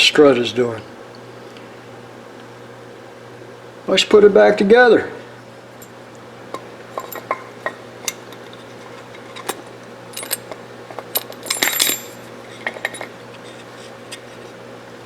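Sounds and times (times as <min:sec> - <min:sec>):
metal rifle parts clicking: 0:10.2 - 0:13.0.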